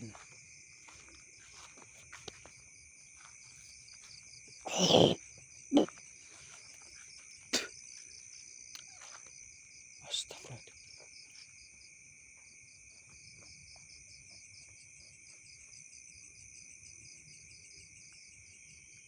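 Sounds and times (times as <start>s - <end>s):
crickets chirping: 0.0s - 19.0s.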